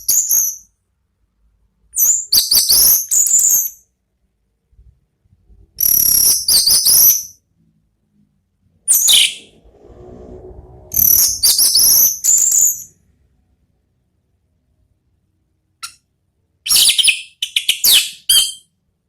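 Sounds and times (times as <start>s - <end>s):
thrush singing whistled phrases: 10.9s - 12.9s.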